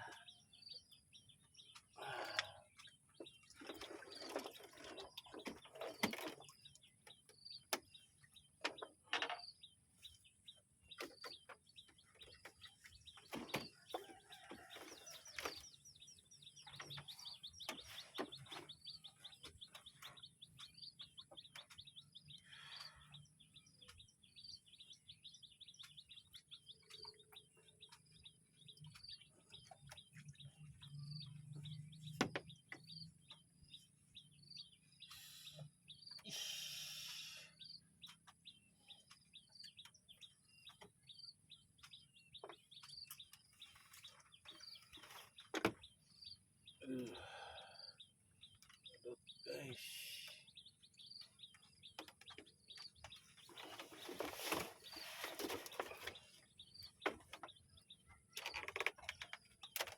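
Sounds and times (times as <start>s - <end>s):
high-pitched chirping ticks: 19.7s - 31.3s.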